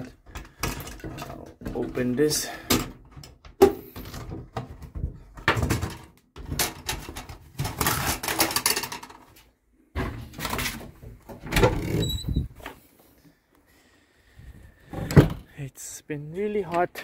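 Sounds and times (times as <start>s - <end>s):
clattering and knocks: 0.0s - 12.7s
door opening: 10.0s - 12.8s.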